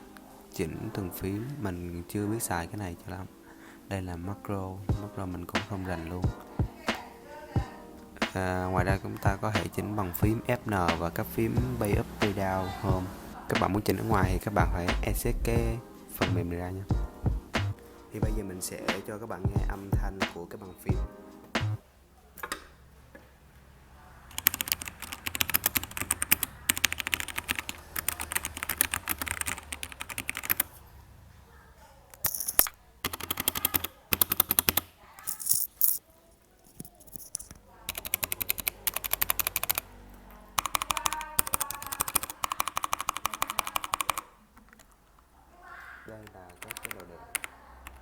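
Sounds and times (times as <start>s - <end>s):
mechanical keyboard typing: 24.3s - 30.7s, 32.2s - 34.9s, 37.9s - 39.9s, 40.6s - 45.0s, 46.2s - 48.0s.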